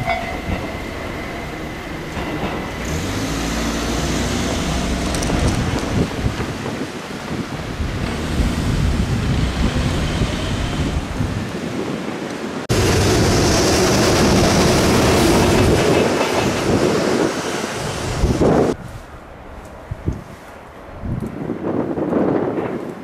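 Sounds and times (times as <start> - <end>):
electric train running past: 0.0 - 6.6, 12.7 - 19.7.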